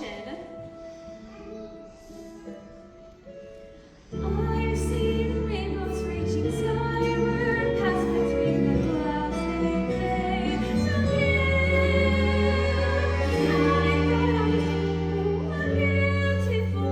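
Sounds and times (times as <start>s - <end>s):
woman singing: 4.2s - 16.9s
accompaniment chords over held bass: 4.3s - 16.9s.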